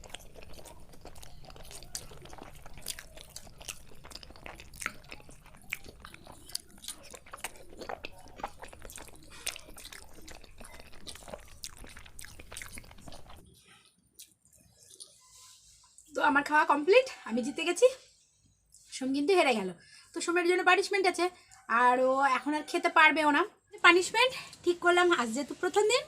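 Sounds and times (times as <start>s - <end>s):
wet mouth clicks: 0.0s - 13.4s
chewing and biting food: 0.0s - 15.3s
food crunching: 0.0s - 16.2s.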